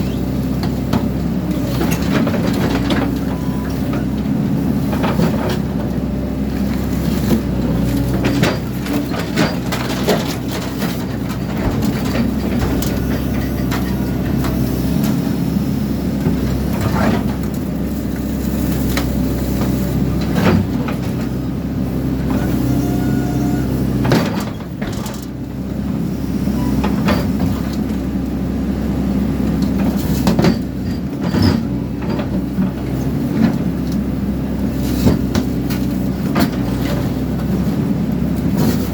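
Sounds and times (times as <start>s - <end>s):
excavator diesel engine running: 0.0s - 38.9s
metal clanking and scraping: 7.0s - 15.2s
metal squealing: 22.2s - 24.0s, 26.5s - 27.1s.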